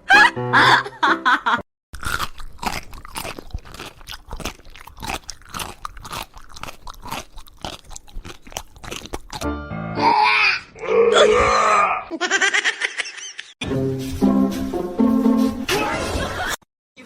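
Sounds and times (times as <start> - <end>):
crunchy chewing: 2.0 - 9.5.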